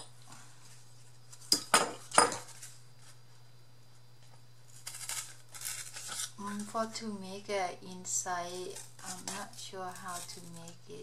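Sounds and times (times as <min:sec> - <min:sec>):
steady low hum: 0:00.0 - 0:11.0
scratchy rustle: 0:04.7 - 0:06.9, 0:08.2 - 0:10.9.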